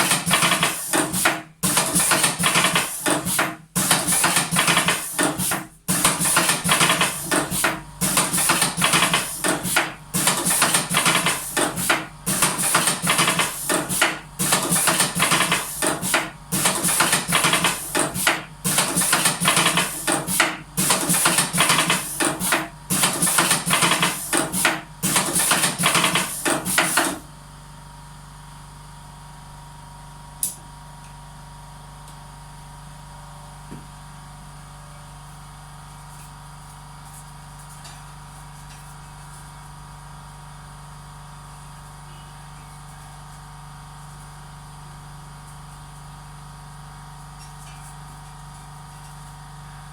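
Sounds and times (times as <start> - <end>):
click: 30.4 - 31.2.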